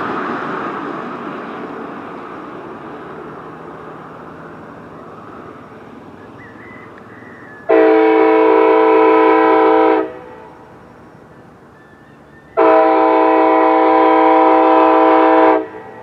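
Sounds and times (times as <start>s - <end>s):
rushing background noise: 0.0s - 16.0s
locomotive air horn blast: 7.7s - 10.6s, 12.6s - 16.0s.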